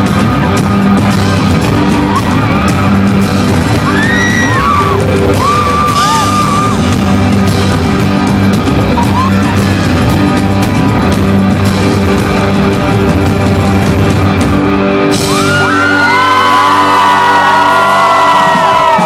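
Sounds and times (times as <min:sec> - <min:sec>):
crowd yelling: 0:00.0 - 0:07.8, 0:14.9 - 0:19.0
live rock band playing: 0:00.0 - 0:19.0.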